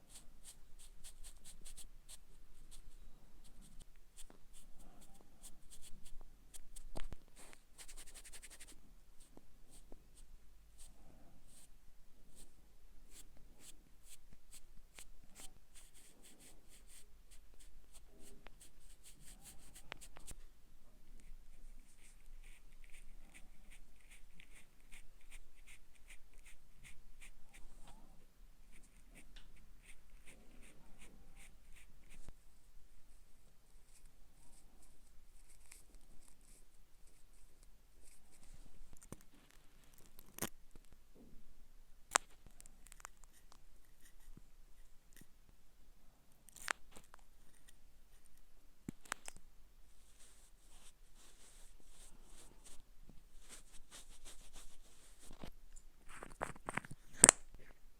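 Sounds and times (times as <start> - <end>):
light taps and brush strokes: 0.0 - 10.3, 13.1 - 20.5, 46.5 - 57.8.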